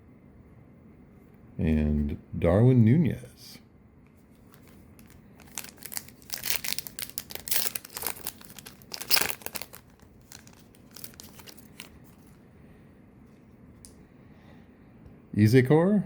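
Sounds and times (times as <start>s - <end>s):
cards rustling and ticking: 4.3s - 12.4s
foil wrapper crinkling and tearing: 4.4s - 12.4s.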